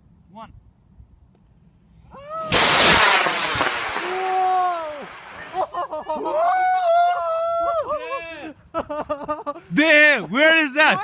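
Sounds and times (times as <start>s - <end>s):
rocket motor rushing hiss: 2.5s - 5.8s.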